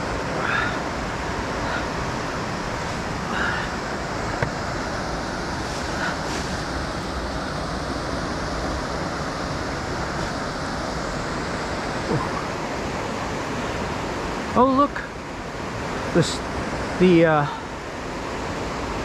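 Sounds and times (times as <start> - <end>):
whitewater rushing: 0.0 - 19.0.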